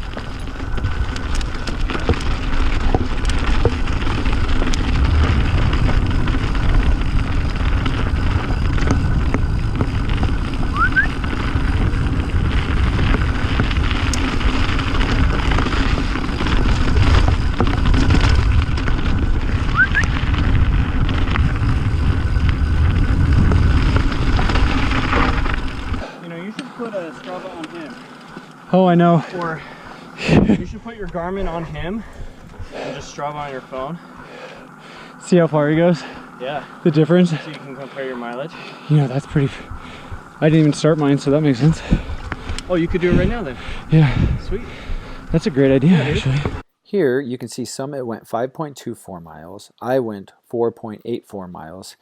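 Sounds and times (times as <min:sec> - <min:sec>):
wind buffeting microphone: 0:00.0 - 0:26.0, 0:30.1 - 0:33.9, 0:39.2 - 0:46.6
bike clicks and rattles: 0:00.0 - 0:46.6
tyres rolling on dirt: 0:00.0 - 0:46.6
rising squeaks: 0:08.3 - 0:11.7, 0:15.8 - 0:26.0.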